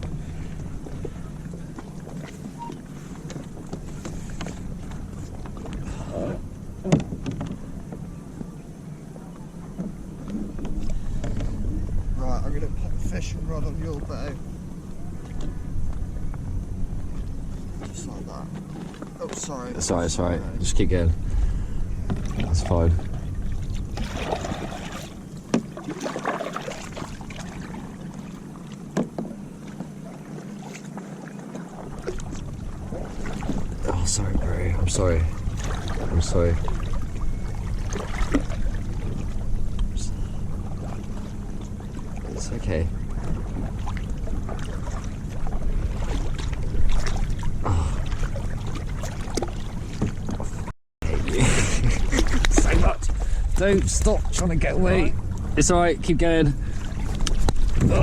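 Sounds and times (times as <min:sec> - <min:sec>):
wind: 0:00.0 - 0:58.0
sharp knocks on a kayak: 0:06.8 - 0:07.6, 0:28.9 - 0:29.9
water washing: 0:22.0 - 0:58.0.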